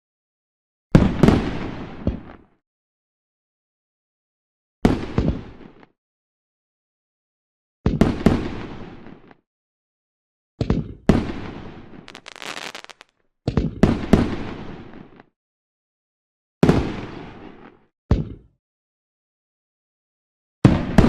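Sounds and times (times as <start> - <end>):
fireworks bangs: 12.1 - 13.1
fireworks crackling spray: 12.1 - 13.1.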